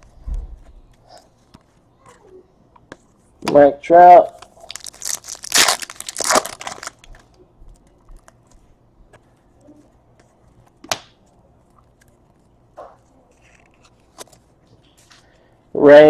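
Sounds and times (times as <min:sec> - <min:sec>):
cards rustling: 0:04.4 - 0:09.4.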